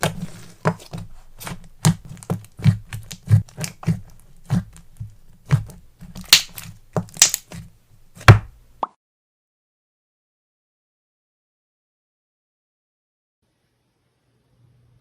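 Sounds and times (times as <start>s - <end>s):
slime squishing with sticky clicks: 0.0s - 8.6s.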